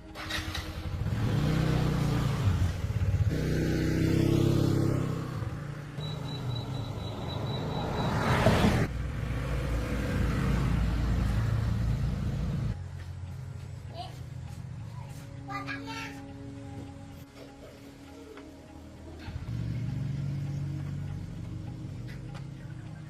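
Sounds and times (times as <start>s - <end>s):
car engine rumbling: 4.4s - 13.5s
rapid high-pitched beeping: 6.0s - 8.2s.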